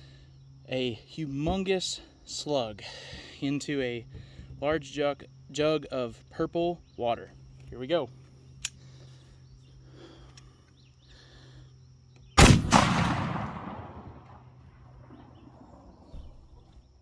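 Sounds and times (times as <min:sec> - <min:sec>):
shotgun shot with rolling echo: 0:12.4 - 0:16.0.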